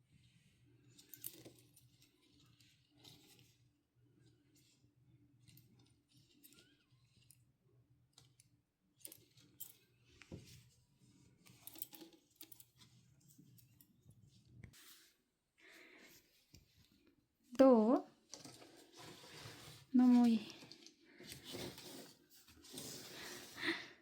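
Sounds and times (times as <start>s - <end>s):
small objects clicking and rustling: 0.9s - 3.6s, 19.9s - 22.9s.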